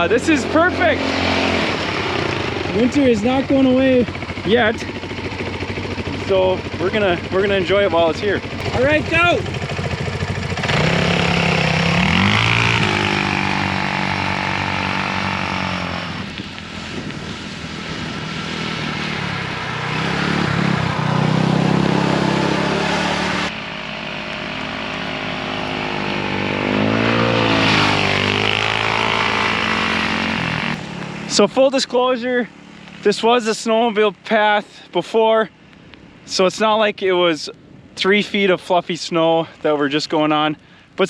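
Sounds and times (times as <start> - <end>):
small engine running: 8.4 - 31.2.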